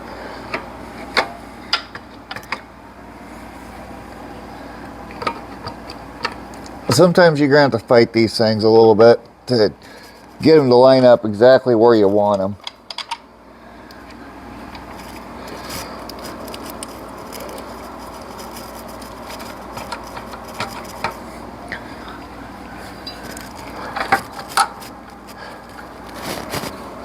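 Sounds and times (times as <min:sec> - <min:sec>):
metal tools clinking and scraping: 0:22.9 - 0:24.9.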